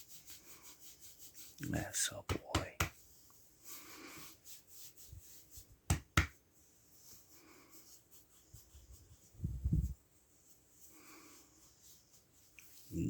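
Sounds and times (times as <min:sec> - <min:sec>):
faint soft rustling: 0:06.4 - 0:13.0.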